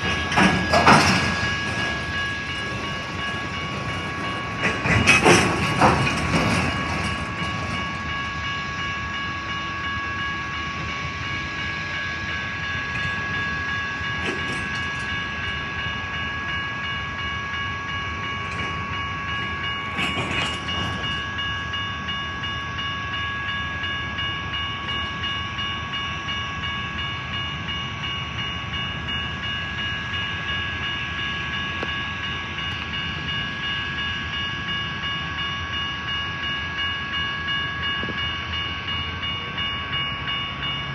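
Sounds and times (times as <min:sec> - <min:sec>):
train wheels clicking over rail joints: 0:00.0 - 0:08.4, 0:12.9 - 0:16.2, 0:18.1 - 0:21.7
high ringing tone: 0:00.0 - 0:40.9.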